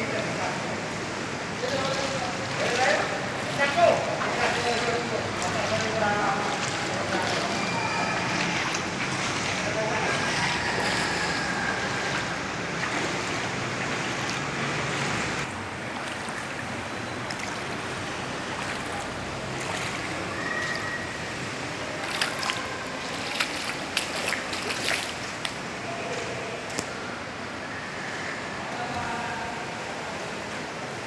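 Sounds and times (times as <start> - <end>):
floodwater rushing: 0.0 - 31.0.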